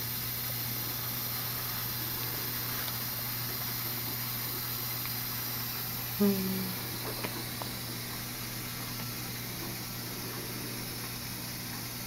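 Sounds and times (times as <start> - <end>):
steady hiss: 0.0 - 12.0
low hum: 6.1 - 11.1.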